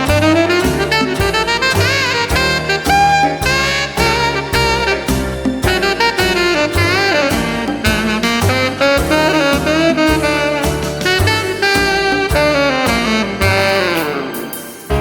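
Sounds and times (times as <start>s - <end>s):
upbeat jazz with saxophone: 0.0s - 15.0s.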